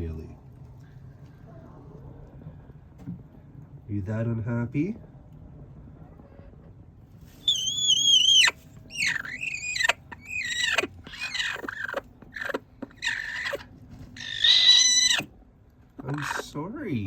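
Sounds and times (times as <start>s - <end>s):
hen complaining calls: 7.4s - 15.3s, 16.0s - 16.5s.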